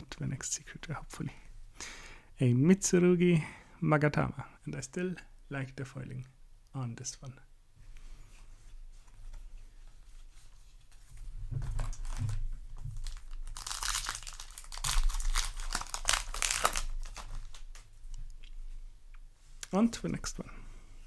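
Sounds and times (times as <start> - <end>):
foil wrapper crinkling and tearing: 11.7 - 17.9.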